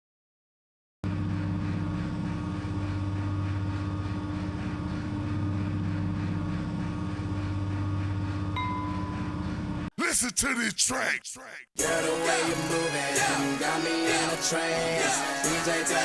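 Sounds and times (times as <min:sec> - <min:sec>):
pulsing mechanical hum: 0:01.0 - 0:09.9.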